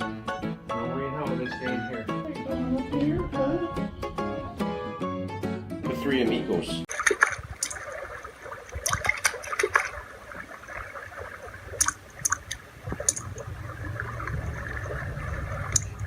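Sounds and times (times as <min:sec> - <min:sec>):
water running and splashing: 0:06.8 - 0:16.0.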